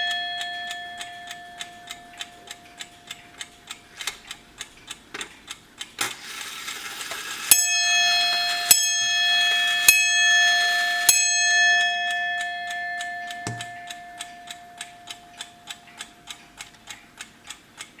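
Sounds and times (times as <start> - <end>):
clock striking bell: 0.0 - 3.7, 6.3 - 16.3
clock ticking: 0.0 - 18.0.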